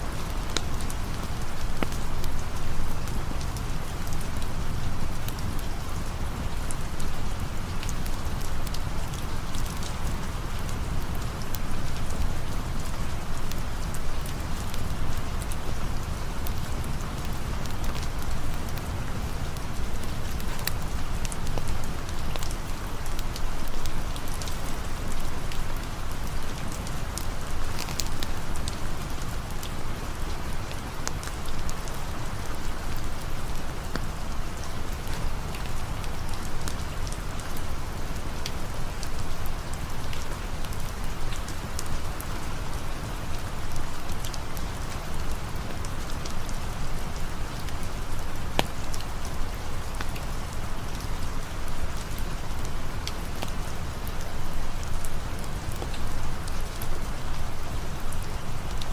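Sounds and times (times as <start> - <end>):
campfire crackling: 0.0 - 58.9
steady rain falling: 0.0 - 58.9.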